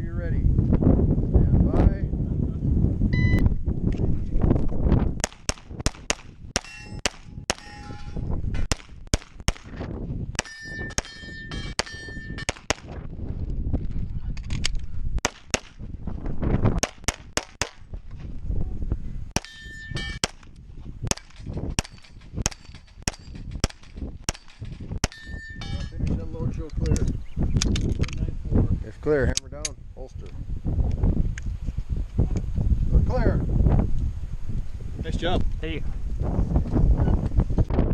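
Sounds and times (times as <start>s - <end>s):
wind buffeting microphone: 0.0s - 37.9s
pistol shots: 5.2s - 7.8s, 15.2s - 15.8s, 21.1s - 25.2s
steel targets ringing: 6.6s - 8.3s, 10.4s - 12.5s, 19.4s - 20.2s, 24.4s - 25.9s.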